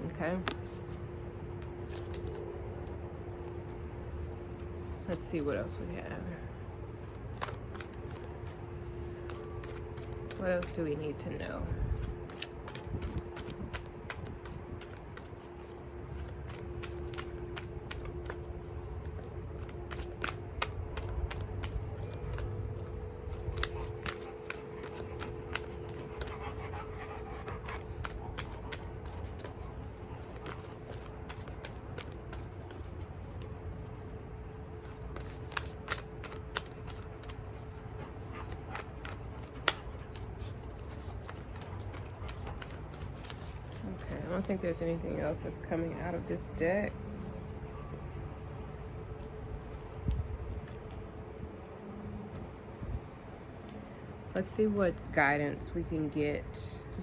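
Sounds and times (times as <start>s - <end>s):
cards being shuffled: 0.4s - 1.0s, 1.6s - 5.7s, 6.9s - 26.7s, 27.3s - 51.0s.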